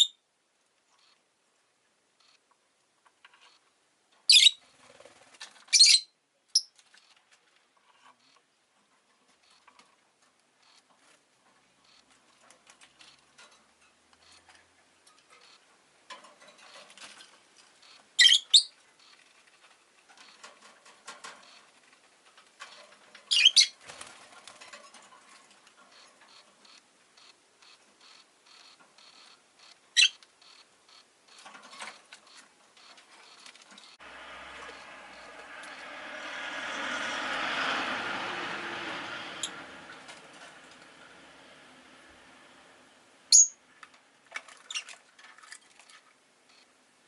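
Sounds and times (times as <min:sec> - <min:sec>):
quiet scratching and rustling: 0:02.2 - 0:03.8, 0:06.7 - 0:18.2, 0:18.8 - 0:23.3, 0:23.9 - 0:37.0, 0:43.7 - 0:46.8
lovebird shrill calls: 0:04.3 - 0:04.6, 0:05.7 - 0:06.7, 0:18.2 - 0:18.7, 0:23.3 - 0:23.8, 0:29.9 - 0:30.2, 0:43.3 - 0:43.6.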